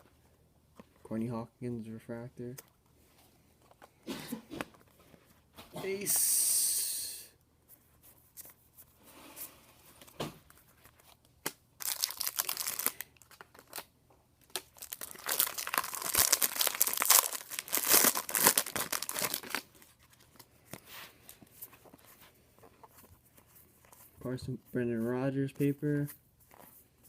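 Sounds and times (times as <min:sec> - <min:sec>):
wrapper tearing and crinkling: 0:11.8 - 0:20.3.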